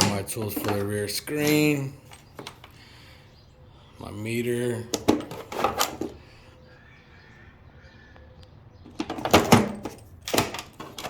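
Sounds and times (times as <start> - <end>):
tools clattering in a toolbox: 0.0 - 2.8, 4.9 - 6.2, 8.9 - 11.0.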